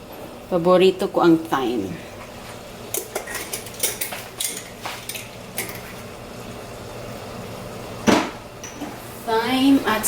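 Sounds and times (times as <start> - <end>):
kitchen utensils clinking: 2.9 - 6.1.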